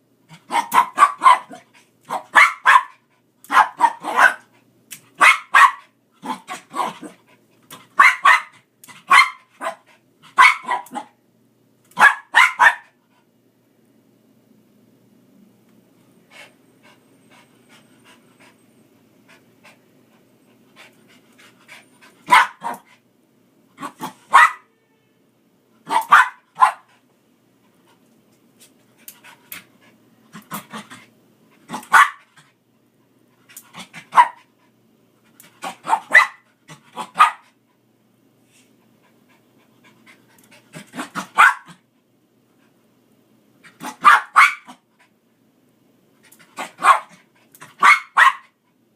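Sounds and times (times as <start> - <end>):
dog barking: 0.5 - 4.5, 5.2 - 7.1, 8.0 - 9.8, 10.4 - 11.2, 12.0 - 13.0, 22.3 - 22.9, 23.8 - 24.7, 25.9 - 26.9, 31.7 - 32.3, 34.1 - 34.4, 35.7 - 36.4, 37.0 - 37.5, 41.2 - 41.8, 43.8 - 44.8, 46.6 - 47.2, 47.8 - 48.6.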